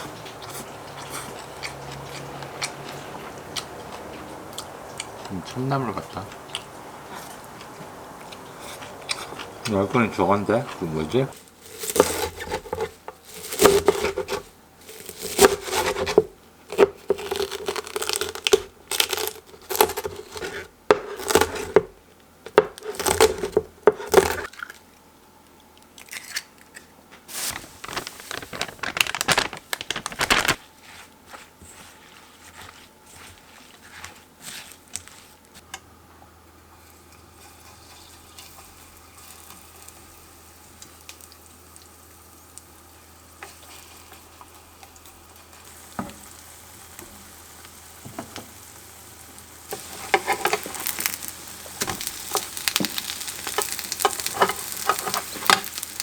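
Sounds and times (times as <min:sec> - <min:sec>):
crinkling and rustling: 0:00.0 - 0:21.9, 0:22.5 - 0:24.5, 0:27.2 - 0:35.6, 0:49.7 - 0:56.0
faint steady hum: 0:00.0 - 0:26.0.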